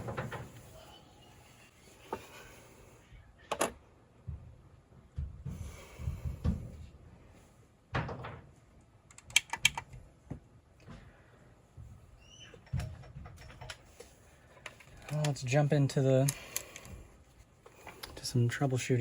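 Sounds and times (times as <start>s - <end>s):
handling clicks and knocks: 12.5s - 17.0s.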